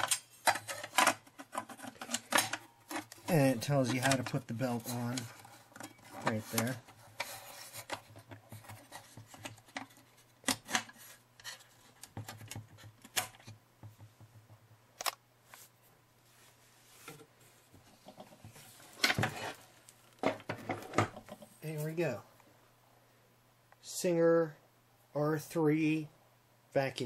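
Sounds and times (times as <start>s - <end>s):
vacuum cleaner parts clicking: 0.0s - 6.9s.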